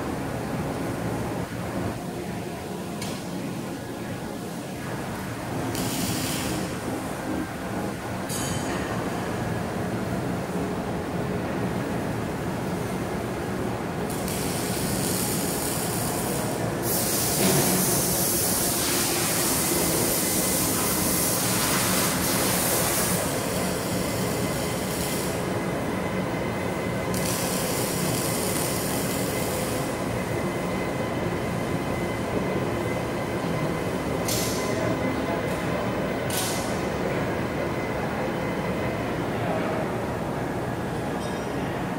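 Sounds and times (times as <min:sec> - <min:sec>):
machinery humming: 0:00.0 - 0:41.9.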